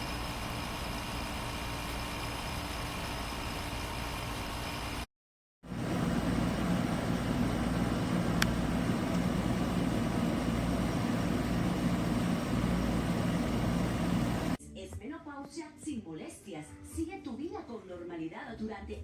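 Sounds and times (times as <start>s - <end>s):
portable air conditioner running: 0.0s - 5.1s, 5.7s - 14.6s.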